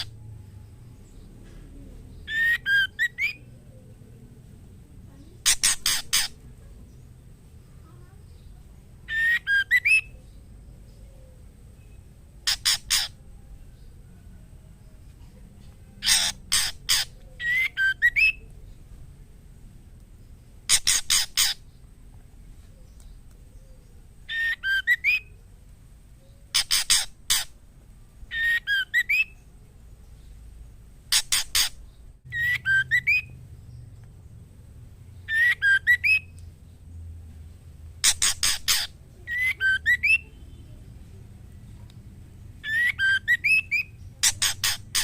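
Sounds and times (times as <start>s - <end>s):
bird harsh rasping notes: 0.0s - 0.2s, 2.2s - 3.5s, 5.2s - 6.5s, 9.1s - 10.2s, 11.8s - 13.2s, 16.0s - 18.4s, 20.6s - 21.8s, 24.3s - 25.4s, 26.5s - 27.6s, 31.0s - 33.4s, 35.3s - 36.4s, 38.0s - 40.8s, 42.6s - 45.0s
bird whistled phrases: 2.2s - 3.5s, 9.1s - 10.2s, 16.0s - 18.5s, 24.3s - 25.4s, 28.3s - 29.4s, 32.3s - 33.4s, 35.3s - 36.4s, 38.0s - 40.8s, 42.6s - 45.0s.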